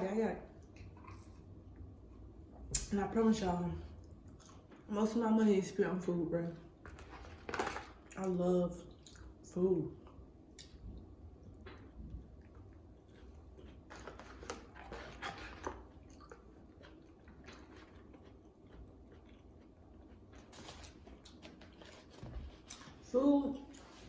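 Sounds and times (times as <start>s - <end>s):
person chewing food: 0.6s - 2.3s, 4.0s - 4.8s, 10.0s - 23.0s.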